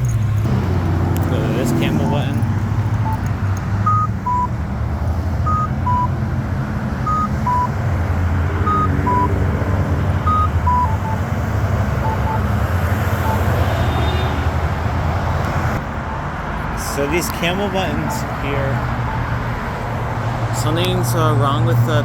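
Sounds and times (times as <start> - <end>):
road traffic rumble: 0.0 - 22.0
pedestrian signal beeps: 1.6 - 2.4, 3.0 - 4.6, 5.4 - 6.2, 7.0 - 7.8, 8.6 - 9.4, 10.2 - 11.3, 12.0 - 12.5, 13.2 - 14.2, 15.8 - 19.4.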